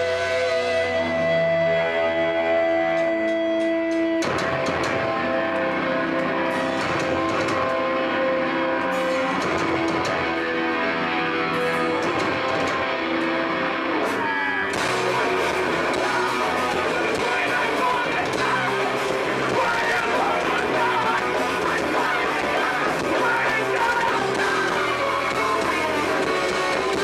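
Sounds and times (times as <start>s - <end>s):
held electric guitar notes: 0.0s - 27.0s
live hardcore band playing: 0.0s - 27.0s.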